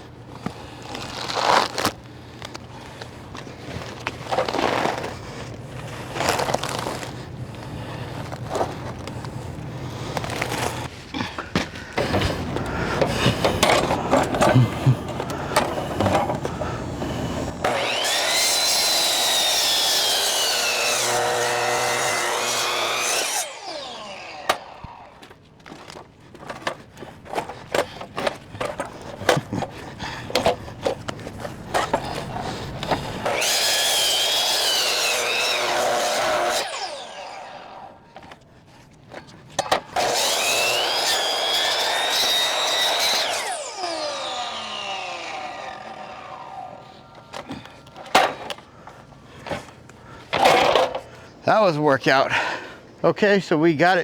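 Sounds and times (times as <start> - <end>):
miter saw cutting log: 3.3 - 26.0, 27.4 - 38.4, 39.1 - 48.6.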